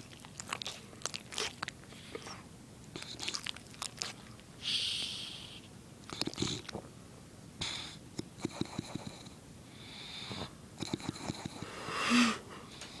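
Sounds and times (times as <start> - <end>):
dog snoring: 7.6 - 9.4, 10.2 - 12.3.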